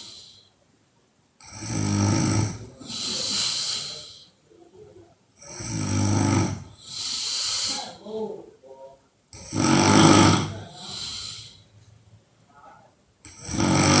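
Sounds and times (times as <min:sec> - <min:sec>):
hissing breath: 0:00.0 - 0:00.6, 0:01.4 - 0:04.4, 0:05.4 - 0:08.0, 0:09.4 - 0:11.7
woman snoring: 0:01.4 - 0:04.1, 0:05.4 - 0:07.8, 0:09.4 - 0:11.6, 0:13.3 - 0:14.0.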